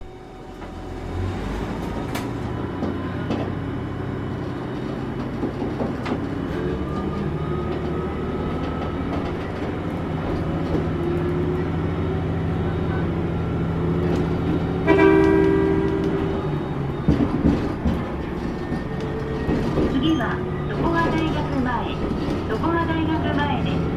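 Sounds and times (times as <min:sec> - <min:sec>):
diesel railcar engine drone: 0:00.0 - 0:23.9
train horn blast: 0:14.8 - 0:16.6.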